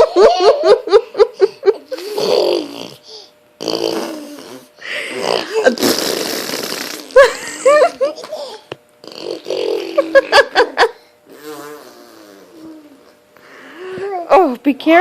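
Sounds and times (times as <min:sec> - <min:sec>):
child blowing raspberries: 0:02.0 - 0:07.2, 0:11.3 - 0:13.0.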